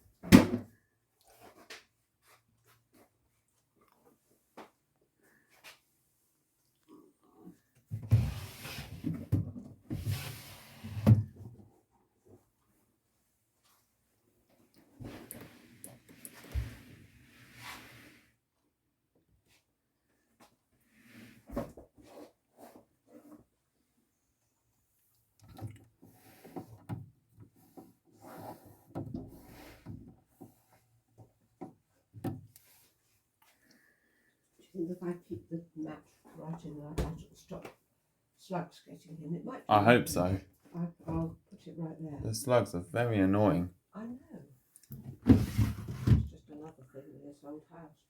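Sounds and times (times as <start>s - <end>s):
objects rubbing and scraping: 45.3s - 46.2s.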